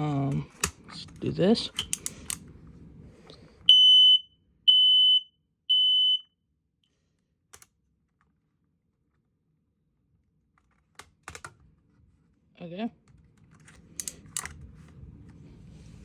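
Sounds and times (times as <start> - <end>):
smoke alarm beeps: 3.7 - 6.3.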